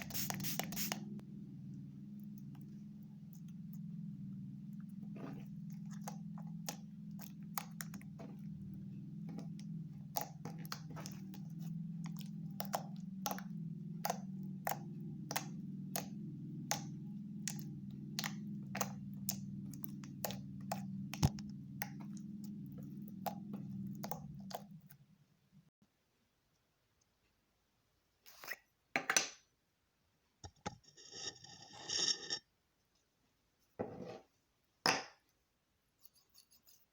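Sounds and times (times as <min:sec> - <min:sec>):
low hum: 0:00.0 - 0:25.7.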